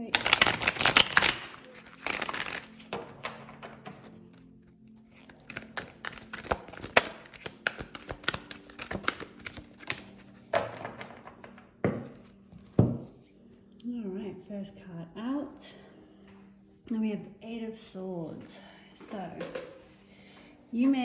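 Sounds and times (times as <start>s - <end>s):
cards being shuffled: 0.1s - 13.0s.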